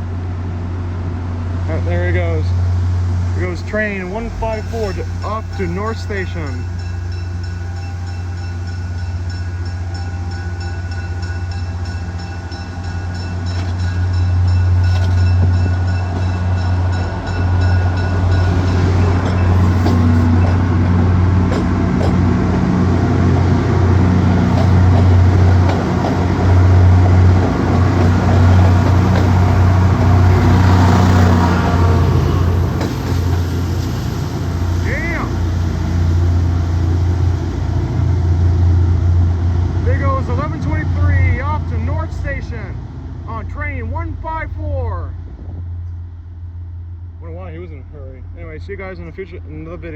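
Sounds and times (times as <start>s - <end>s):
diesel locomotive engine: 0.0s - 49.9s
locomotive bell ringing: 3.4s - 19.6s.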